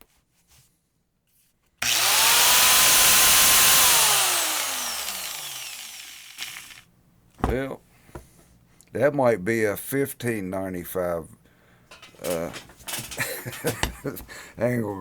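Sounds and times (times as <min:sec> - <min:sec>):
angle grinder whining: 0:01.8 - 0:06.8.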